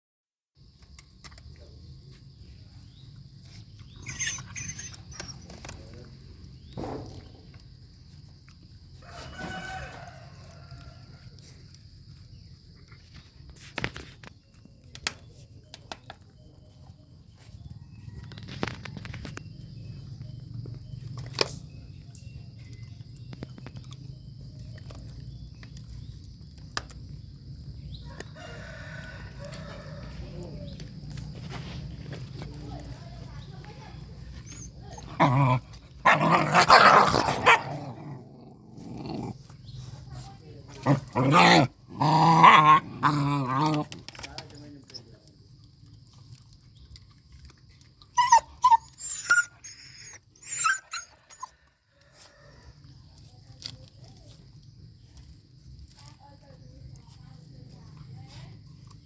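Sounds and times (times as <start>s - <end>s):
puppy crying: 4.0s - 5.5s, 48.2s - 51.5s
rooster crowing: 9.0s - 11.3s, 28.0s - 30.6s.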